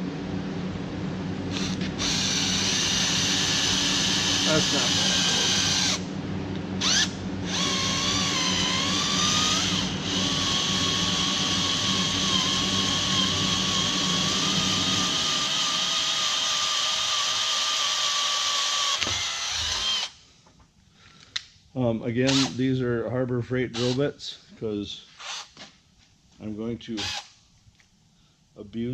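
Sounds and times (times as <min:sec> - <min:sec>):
cordless drill boring into metal: 0:01.5 - 0:06.0, 0:06.8 - 0:20.2, 0:22.3 - 0:22.6, 0:23.8 - 0:24.0, 0:27.0 - 0:27.3.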